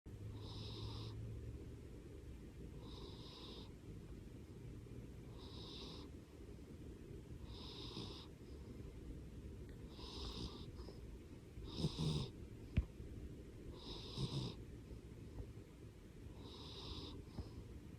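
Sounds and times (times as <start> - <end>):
cat snoring: 0.3 - 1.2, 2.8 - 3.7, 5.3 - 6.1, 7.4 - 8.4, 9.9 - 10.9, 11.6 - 12.4, 13.7 - 14.6, 16.3 - 17.6.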